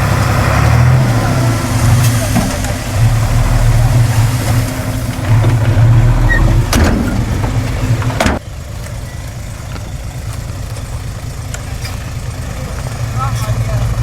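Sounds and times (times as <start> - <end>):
heavy diesel engine running: 0.0 - 14.0
metal clanks: 1.8 - 8.5.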